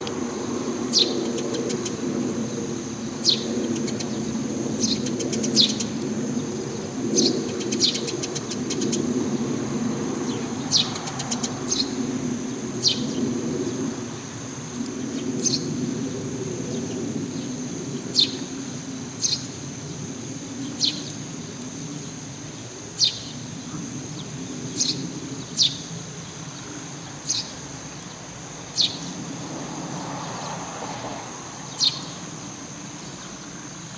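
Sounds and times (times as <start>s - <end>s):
sparrow chirping: 10.2s - 12.0s, 27.2s - 29.2s, 31.7s - 32.3s.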